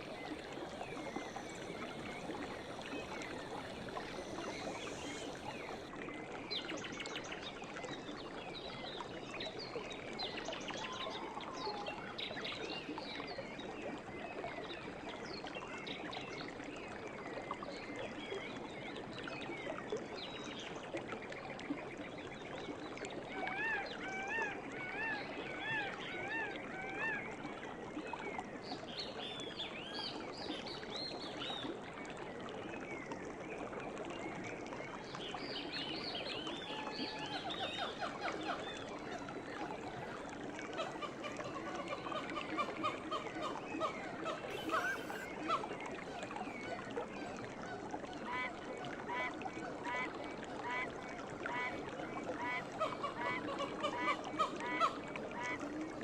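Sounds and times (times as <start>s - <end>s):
birds chirping: 0.0s - 5.9s, 44.5s - 45.3s
stream water running: 0.0s - 56.0s.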